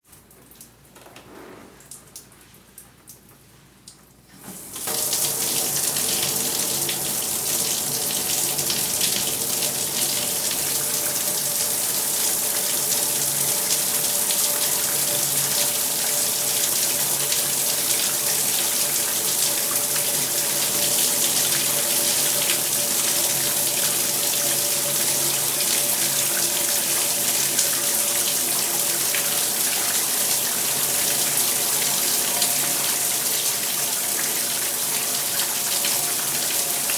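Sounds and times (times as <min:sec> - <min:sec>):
shower water spraying: 0:04.5 - 0:36.9.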